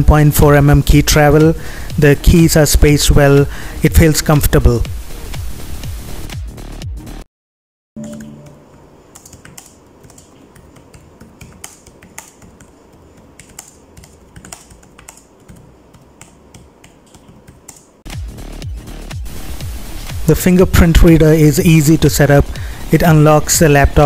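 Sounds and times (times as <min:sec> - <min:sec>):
laptop keyboard typing: 0:08.0 - 0:18.0.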